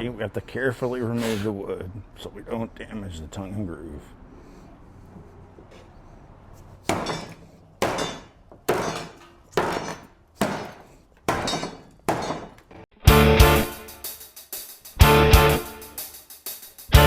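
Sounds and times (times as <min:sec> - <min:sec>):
hammer striking wooden flooring: 0:06.9 - 0:12.8.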